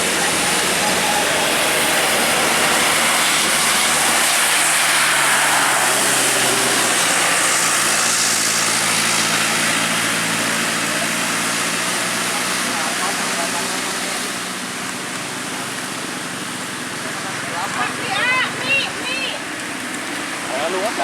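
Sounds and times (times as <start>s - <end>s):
heavy road noise: 0.0s - 21.0s
truck engine under load: 0.0s - 21.0s.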